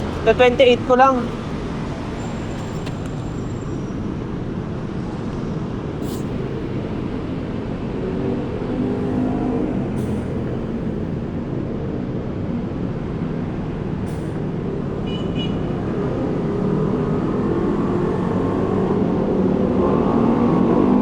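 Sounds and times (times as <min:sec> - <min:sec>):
vehicle engine and road noise: 0:00.0 - 0:21.0.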